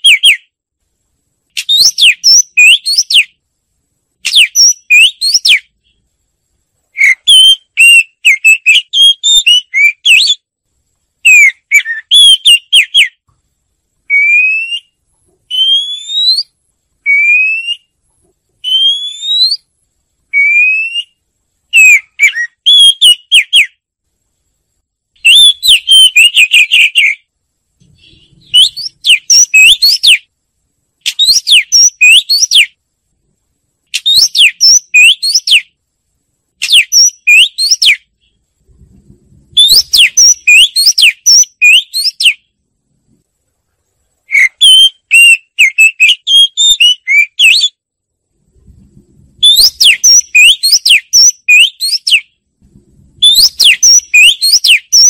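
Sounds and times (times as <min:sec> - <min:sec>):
bird singing whistled phrases: 0:00.0 - 0:00.5, 0:01.6 - 0:03.4, 0:04.2 - 0:06.0, 0:07.0 - 0:10.4, 0:11.2 - 0:13.2, 0:14.1 - 0:17.9, 0:18.6 - 0:19.7, 0:20.3 - 0:23.8, 0:25.2 - 0:27.3, 0:28.0 - 0:30.3, 0:31.1 - 0:32.8, 0:33.9 - 0:35.8, 0:36.6 - 0:38.3, 0:39.6 - 0:42.4, 0:44.3 - 0:47.8, 0:49.4 - 0:52.3, 0:53.2 - 0:55.0
clear upward-sliding bird whistles: 0:00.0 - 0:00.5, 0:01.6 - 0:03.4, 0:04.2 - 0:06.0, 0:07.0 - 0:10.4, 0:11.2 - 0:13.2, 0:14.1 - 0:18.0, 0:18.6 - 0:19.7, 0:20.3 - 0:23.8, 0:25.2 - 0:27.2, 0:27.9 - 0:30.3, 0:31.1 - 0:32.8, 0:33.9 - 0:35.8, 0:36.6 - 0:38.4, 0:39.6 - 0:42.4, 0:44.3 - 0:47.8, 0:49.4 - 0:52.3, 0:53.2 - 0:55.0.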